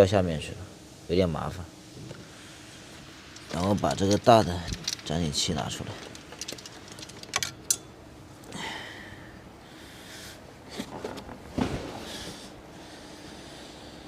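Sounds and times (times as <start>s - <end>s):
metal engine parts clinking: 3.0s - 8.0s.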